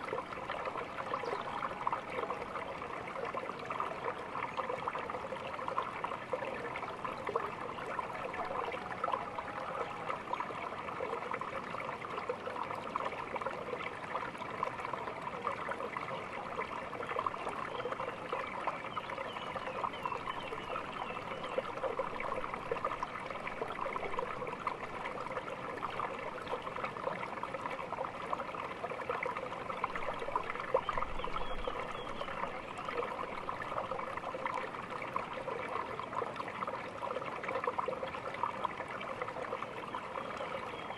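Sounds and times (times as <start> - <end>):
stream babbling over stones: 0.0 - 40.9.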